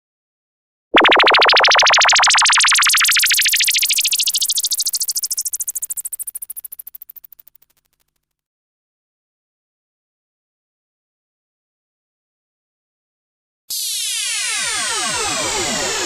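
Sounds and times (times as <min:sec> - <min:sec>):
rising pulsing synthesizer tone: 0:01.0 - 0:06.0.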